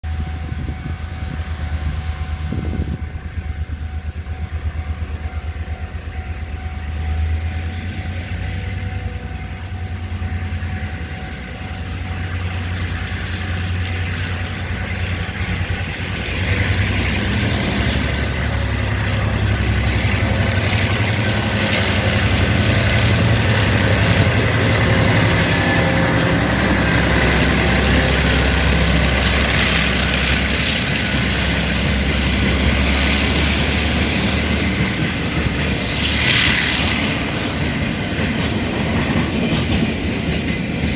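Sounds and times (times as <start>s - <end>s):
diesel locomotive throbbing: 0.0s - 40.9s.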